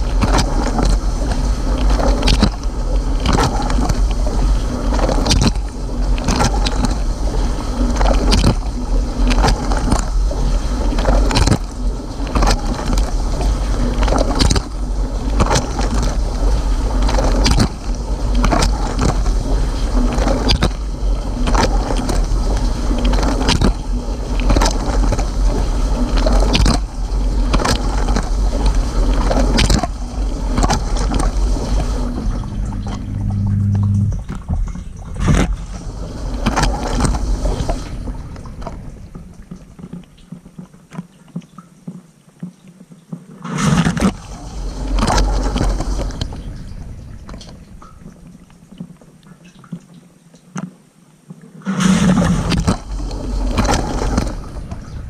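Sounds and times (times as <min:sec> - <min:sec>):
dishwasher low hum: 0:00.0 - 0:40.4
water splats: 0:00.0 - 0:55.0.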